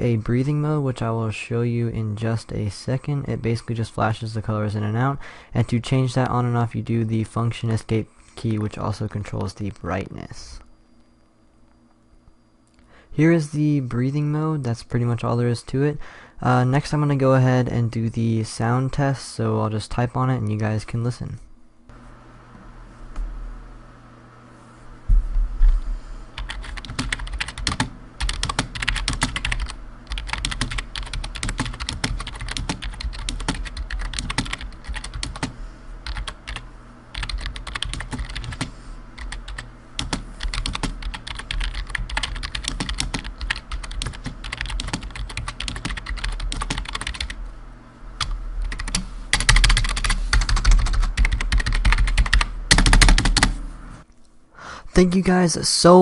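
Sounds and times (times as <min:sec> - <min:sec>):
mechanical keyboard clicking: 0:26.4 - 0:36.6, 0:37.2 - 0:47.4, 0:48.7 - 0:53.5.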